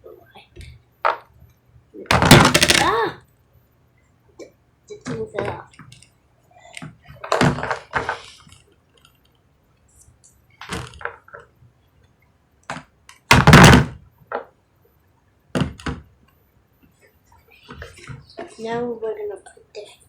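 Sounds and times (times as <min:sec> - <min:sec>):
heavy thump: 0:02.1 - 0:02.9
plastic toy pieces clattering: 0:02.1 - 0:03.0.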